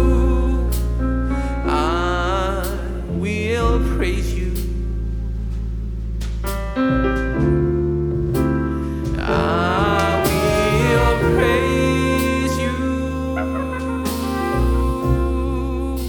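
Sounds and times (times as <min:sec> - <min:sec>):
double bass: 0:00.0 - 0:16.0
piano chords: 0:00.0 - 0:16.0
drums with cymbal strikes: 0:05.5 - 0:12.7, 0:13.8 - 0:16.0
horn line with vibrato: 0:09.0 - 0:16.0.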